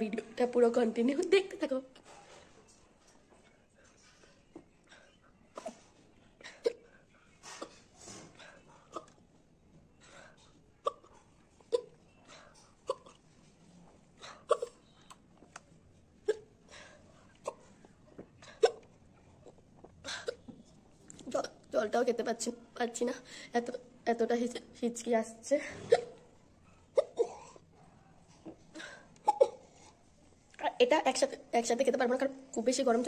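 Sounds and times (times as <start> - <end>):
woman hiccuping: 12.8 - 13.2, 14.5 - 14.8.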